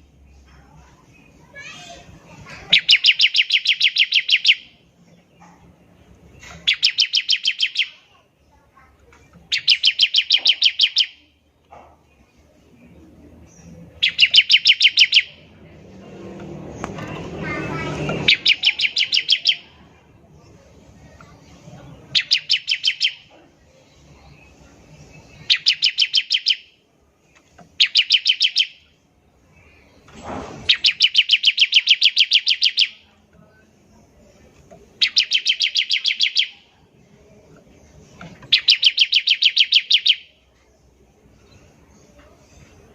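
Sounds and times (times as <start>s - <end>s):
bird rapid high call bursts: 2.7s - 4.7s, 6.6s - 8.0s, 9.5s - 11.2s, 14.0s - 15.4s, 18.2s - 19.8s, 22.1s - 23.2s, 25.4s - 26.8s, 27.8s - 29.0s, 30.7s - 33.0s, 35.0s - 36.6s, 38.5s - 40.3s.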